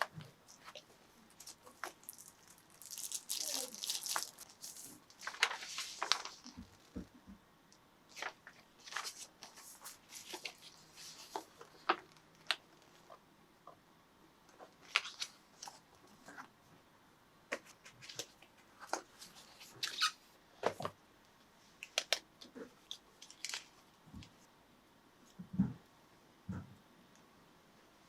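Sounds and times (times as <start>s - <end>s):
packaging rustling: 0.5s - 7.0s.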